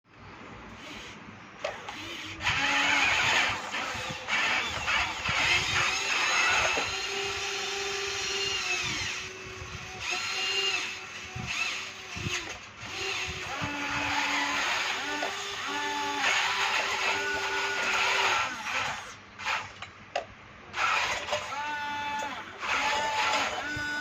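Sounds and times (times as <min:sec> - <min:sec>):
grinding and clanking: 0:00.9 - 0:09.2.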